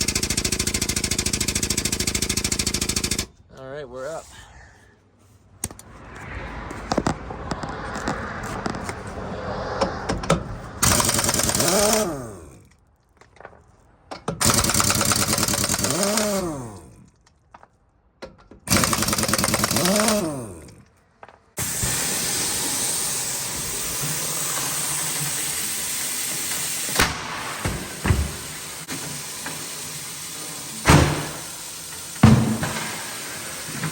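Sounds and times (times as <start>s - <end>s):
impact wrench rattling: 0.0s - 3.4s, 10.8s - 21.0s.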